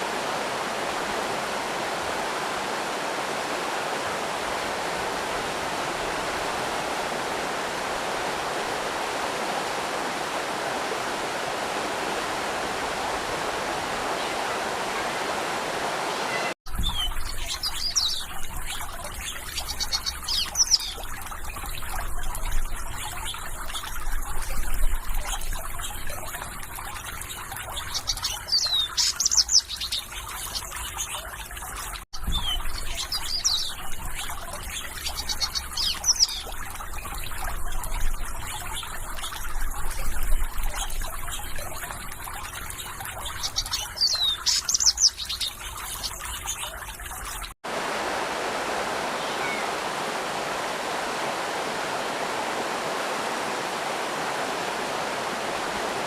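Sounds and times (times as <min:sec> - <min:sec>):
flowing water rushing: 0:00.0 - 0:56.0
trickling water: 0:00.0 - 0:56.0
birds chirping: 0:16.0 - 0:31.4, 0:32.3 - 0:47.4, 0:49.0 - 0:53.9.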